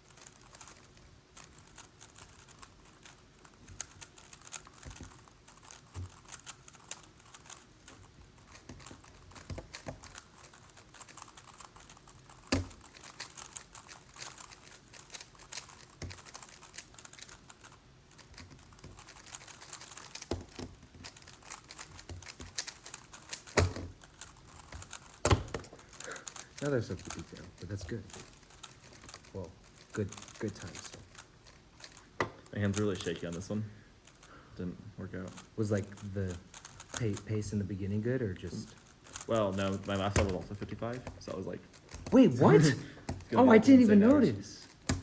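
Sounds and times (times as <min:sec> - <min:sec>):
plastic puzzle clicks and clacks: 0:00.0 - 0:34.3, 0:35.2 - 0:42.2, 0:43.0 - 0:45.0.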